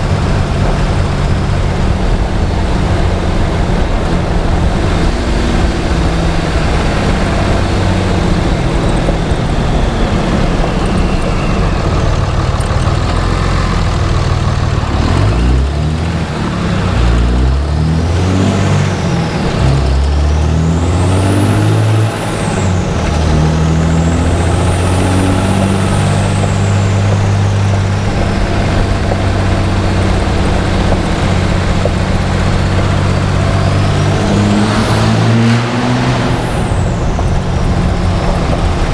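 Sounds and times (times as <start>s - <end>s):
diesel truck engine running: 0.0s - 38.9s
turbocharger whistle: 4.9s - 13.7s.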